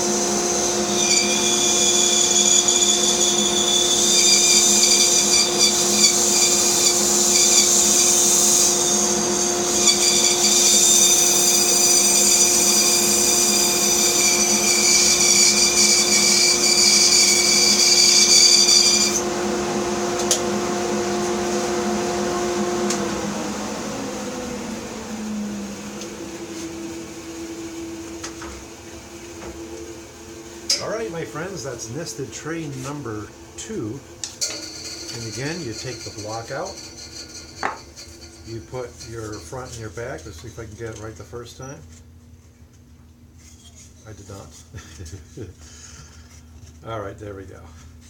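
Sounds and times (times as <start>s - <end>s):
bandsaw cutting wood: 0.0s - 23.4s, 29.6s - 41.2s
saw motor hum coasting down: 0.0s - 37.1s.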